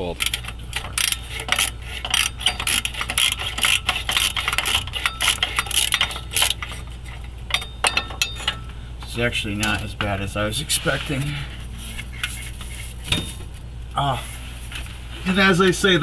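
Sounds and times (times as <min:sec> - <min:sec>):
hand tools clinking on metal: 0:00.2 - 0:08.8.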